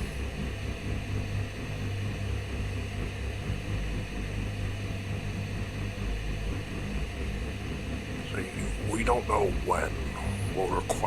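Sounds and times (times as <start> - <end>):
low droning rumble: 0.0 - 11.0.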